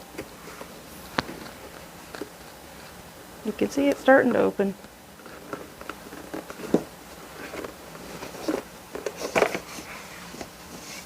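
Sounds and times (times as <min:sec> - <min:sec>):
cardboard and paper knocks and rustles: 0:05.2 - 0:11.0.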